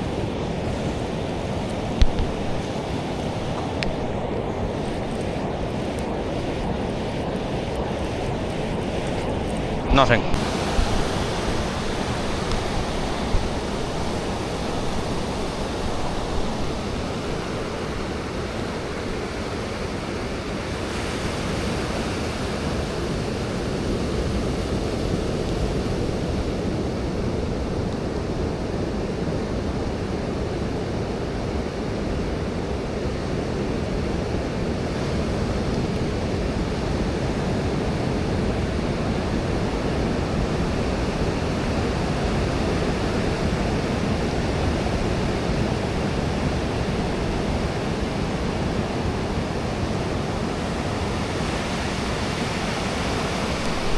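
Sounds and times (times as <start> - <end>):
surf breaking on beach: 0.0 - 26.3, 39.0 - 53.9
wind buffeting microphone: 0.0 - 30.8.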